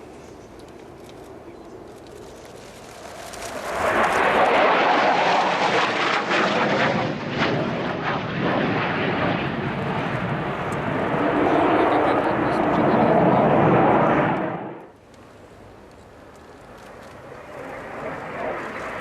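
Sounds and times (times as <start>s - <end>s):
jet passing overhead: 1.2s - 15.0s, 17.0s - 19.0s.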